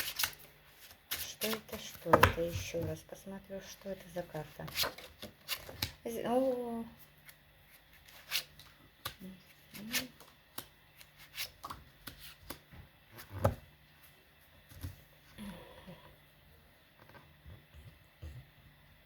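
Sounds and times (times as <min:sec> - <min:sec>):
cards rustling and tapping: 0:00.0 - 0:03.0, 0:04.4 - 0:06.0, 0:07.2 - 0:13.6.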